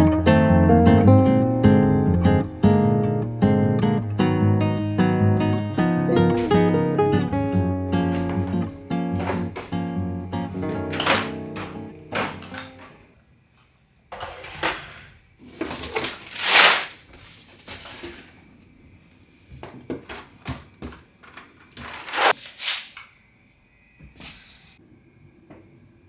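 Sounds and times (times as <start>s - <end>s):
fridge drawers sliding and clunking: 1.8s - 13.0s, 14.1s - 18.6s, 19.6s - 23.0s.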